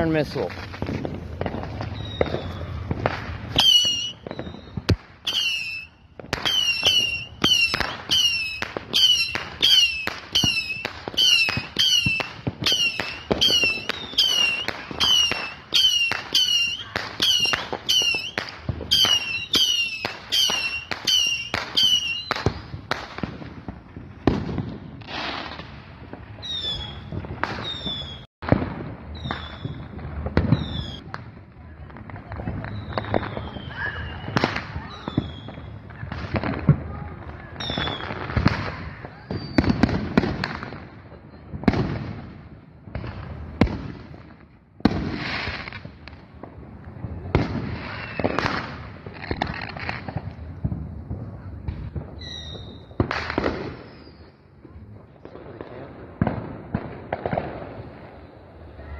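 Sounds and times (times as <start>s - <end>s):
whistling rockets firing: 0.0s - 31.1s, 32.4s - 42.2s, 47.2s - 50.3s, 51.1s - 58.9s.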